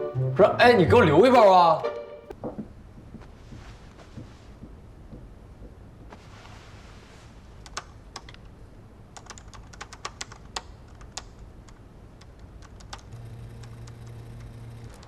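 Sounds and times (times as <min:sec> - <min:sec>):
typing on keyboard: 0:09.2 - 0:14.0.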